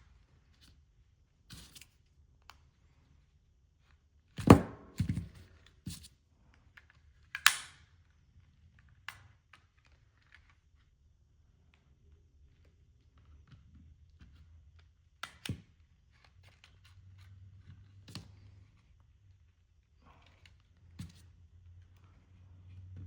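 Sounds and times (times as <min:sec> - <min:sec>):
plastic casing clicks and snaps: 0:07.4 - 0:07.8.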